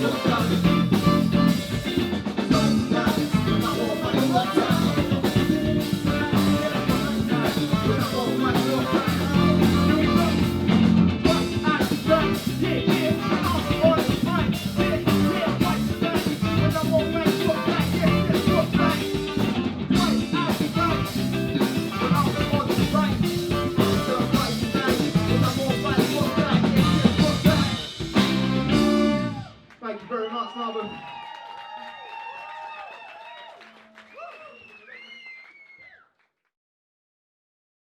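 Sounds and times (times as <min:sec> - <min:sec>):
drum kit steady beat: 0:00.0 - 0:29.4
live band music: 0:00.0 - 0:29.6.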